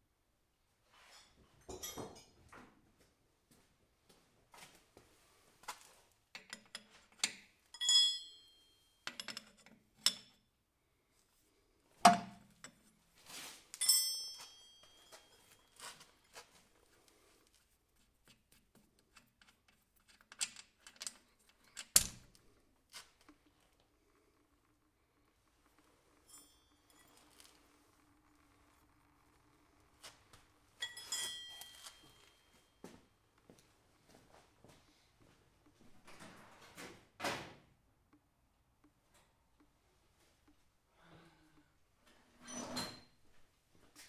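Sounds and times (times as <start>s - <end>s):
metal tools clinking and knocking: 1.1s - 2.4s, 6.4s - 10.4s, 13.8s - 16.6s, 19.0s - 22.4s, 26.1s - 27.7s, 30.0s - 32.9s
metal ringing: 12.1s - 12.5s, 30.8s - 32.6s.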